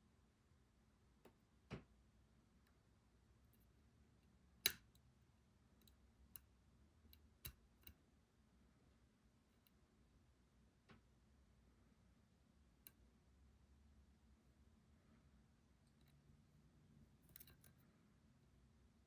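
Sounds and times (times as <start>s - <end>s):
lock pick metallic clicks: 4.6s - 5.0s, 17.2s - 17.8s.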